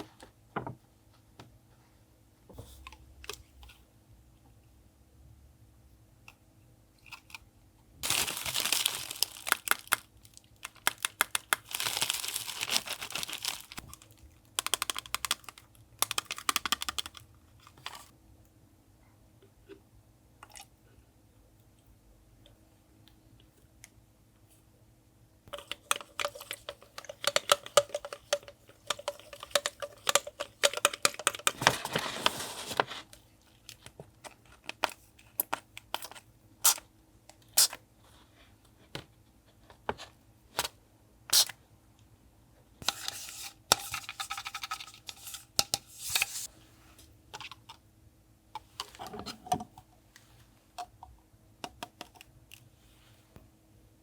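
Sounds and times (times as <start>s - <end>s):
paper rustling and tearing: 31.6s - 33.1s.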